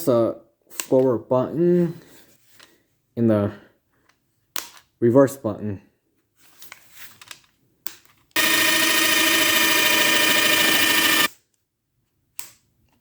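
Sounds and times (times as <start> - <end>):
cordless drill motor whine: 8.4 - 11.3.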